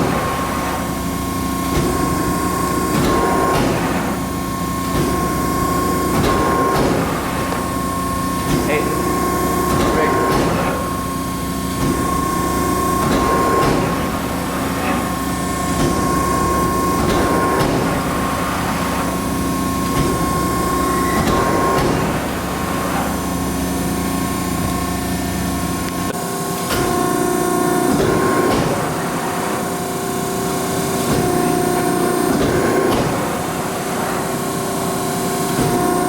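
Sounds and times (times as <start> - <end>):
hydraulic press humming and whining: 0.0 - 36.0.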